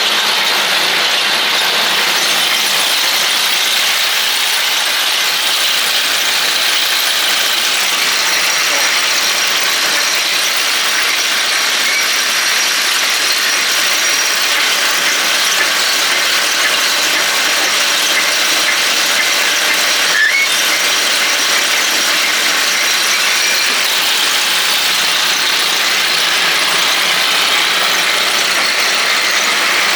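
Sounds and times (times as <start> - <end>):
short mechanical squeal: 20.0 - 20.8.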